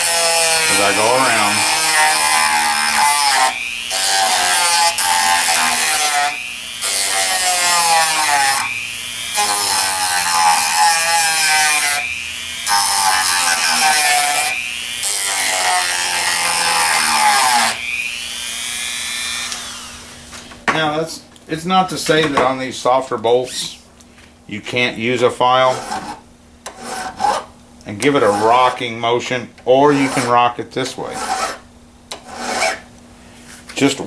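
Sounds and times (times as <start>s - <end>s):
rotary tool grinding metal: 0.0s - 20.2s, 28.1s - 28.8s, 29.8s - 32.9s.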